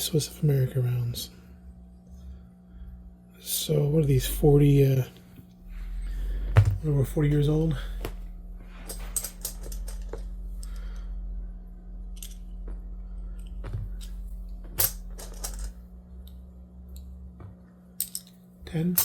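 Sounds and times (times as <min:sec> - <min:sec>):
steady low hum: 0:00.0 - 0:19.0
metal coins clinking: 0:08.9 - 0:10.2, 0:14.8 - 0:15.8.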